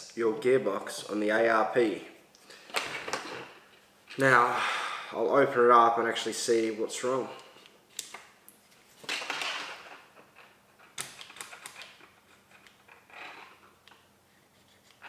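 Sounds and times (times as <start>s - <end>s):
plastic and metal parts clicking: 9.1s - 14.0s.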